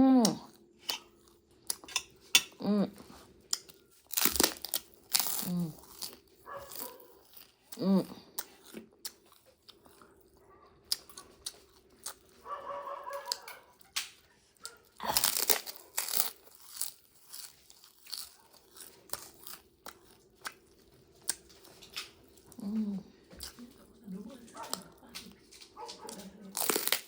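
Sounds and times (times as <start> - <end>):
person chewing and crunching food: 0.1 - 27.0.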